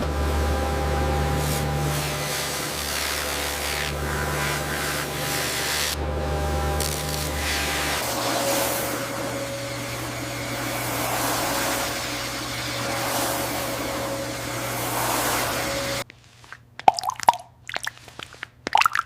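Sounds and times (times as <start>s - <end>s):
small electric motor whirring: 1.2s - 16.1s.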